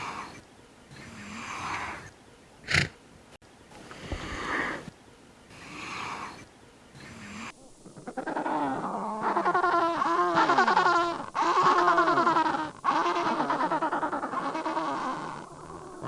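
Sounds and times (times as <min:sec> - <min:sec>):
breathy animal sounds: 0:00.0 - 0:02.1, 0:05.5 - 0:16.0.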